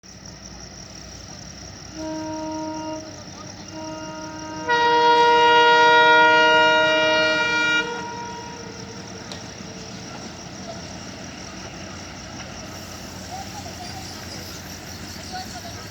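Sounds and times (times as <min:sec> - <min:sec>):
diesel train horn blasts: 0:01.9 - 0:09.4.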